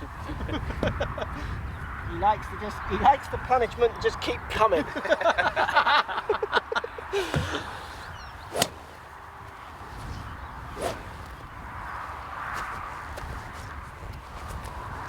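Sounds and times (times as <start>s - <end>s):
voices: 1.4s - 11.6s
golf club striking ball: 8.4s - 9.2s, 10.7s - 11.5s.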